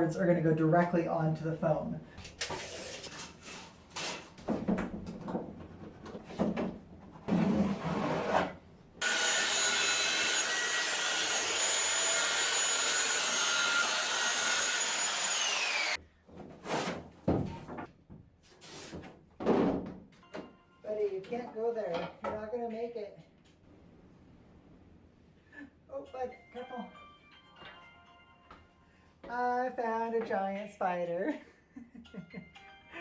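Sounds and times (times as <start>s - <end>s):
knocks and scrapes: 2.4s - 8.6s, 16.3s - 17.9s
power tool running: 9.0s - 16.0s.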